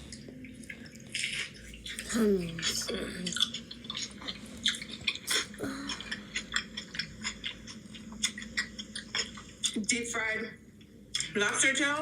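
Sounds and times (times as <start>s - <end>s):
wet chewing mouth clicks: 3.3s - 9.8s.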